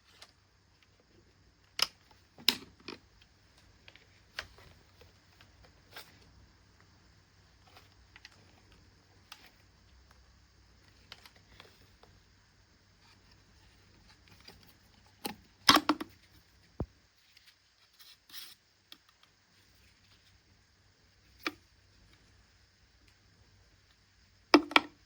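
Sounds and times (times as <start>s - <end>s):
light clicks and handling noises: 0.0s - 12.4s, 13.0s - 20.5s.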